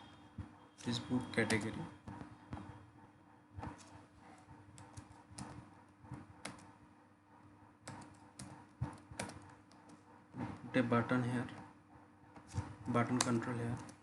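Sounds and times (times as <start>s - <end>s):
keyboard keys clicking: 7.9s - 9.9s.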